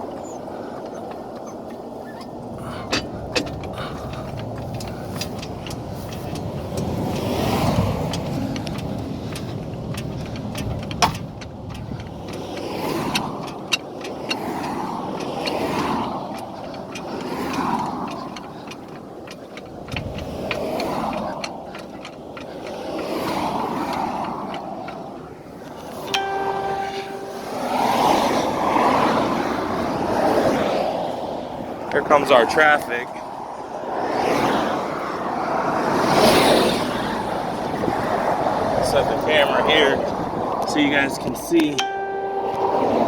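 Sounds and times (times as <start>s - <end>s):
sharp clicks and metal knocks: 0.0s - 30.7s, 37.6s - 43.0s
cars passing on road: 0.0s - 43.0s.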